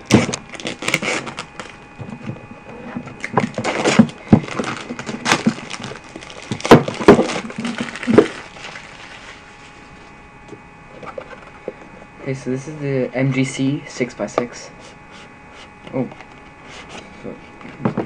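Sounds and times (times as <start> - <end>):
packaging crackling and knocking: 0.0 - 2.4, 3.0 - 9.0.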